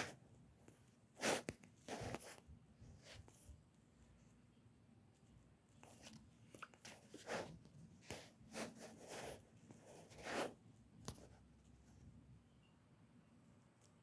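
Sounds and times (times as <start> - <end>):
handling rustles and scrapes: 5.2 - 10.6.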